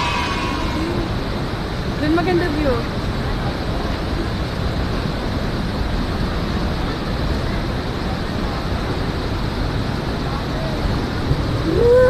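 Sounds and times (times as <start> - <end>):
waterfall roaring: 0.0 - 12.0.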